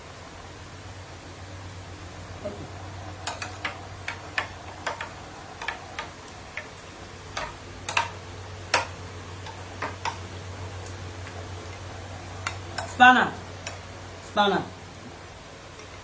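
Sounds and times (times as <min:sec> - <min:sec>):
steady low hum: 0:00.0 - 0:16.0
spoon clicking against plate: 0:03.2 - 0:11.0.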